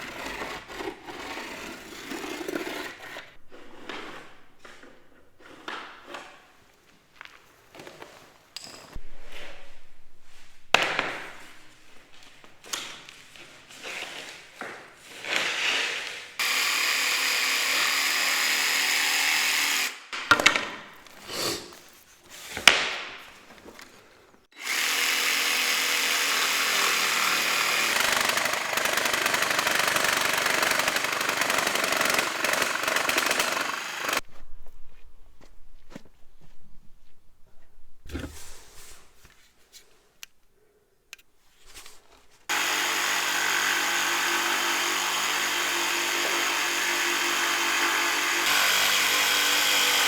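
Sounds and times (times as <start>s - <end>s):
power tool running: 16.4s - 20.0s, 24.6s - 34.2s, 42.5s - 50.0s.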